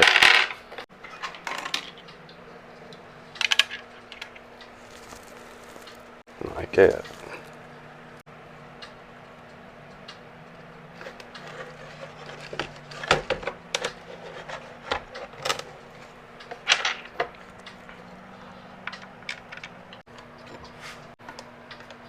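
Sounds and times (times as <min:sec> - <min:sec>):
faint steady hum: 0:00.9 - 0:22.0
computer parts clicking and knocking: 0:11.1 - 0:15.8.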